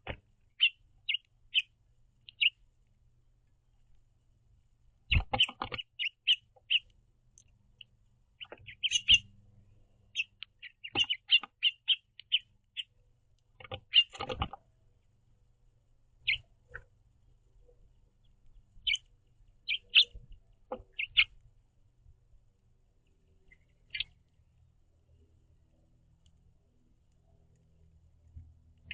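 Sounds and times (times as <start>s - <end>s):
finches chirping: 0.0s - 2.6s, 5.1s - 14.6s, 16.2s - 16.9s, 17.6s - 21.4s, 23.1s - 24.3s.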